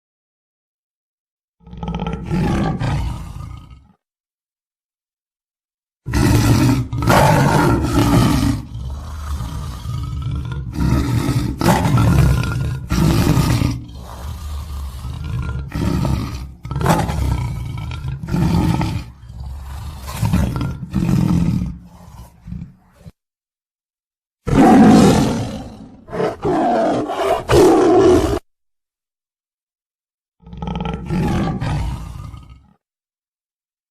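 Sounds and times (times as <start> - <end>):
tiger roaring: 1.6 - 4.0, 6.1 - 23.2, 24.5 - 28.5, 30.4 - 32.8.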